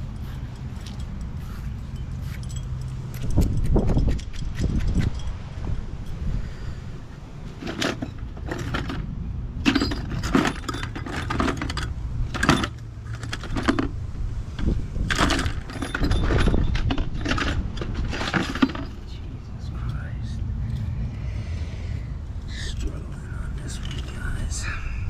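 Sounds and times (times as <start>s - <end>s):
metal tools clinking: 0.0s - 5.4s, 7.5s - 14.0s, 14.6s - 19.2s
low rumble: 13.9s - 25.0s.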